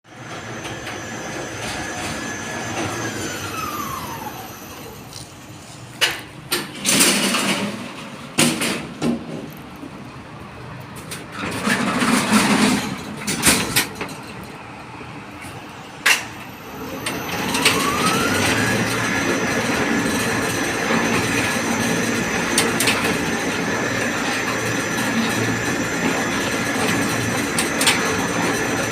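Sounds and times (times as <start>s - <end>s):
hoist motor whine: 0.1s - 6.1s, 15.7s - 28.9s
metal clanks and bangs: 6.0s - 9.7s, 11.0s - 14.4s.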